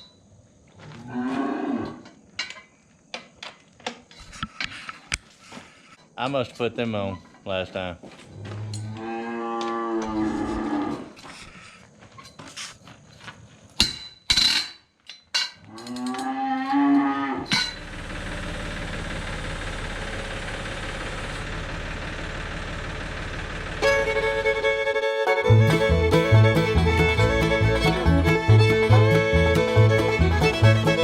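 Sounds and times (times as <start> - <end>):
cattle mooing: 8.5 - 11.1
sharp metallic knocks: 13.8 - 14.8
mechanical running noise: 17.5 - 25.1
music: 23.8 - 31.0.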